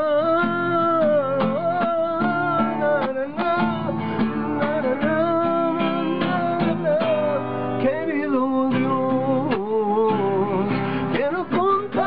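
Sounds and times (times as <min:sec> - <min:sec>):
strummed acoustic guitar: 0:00.0 - 0:12.0.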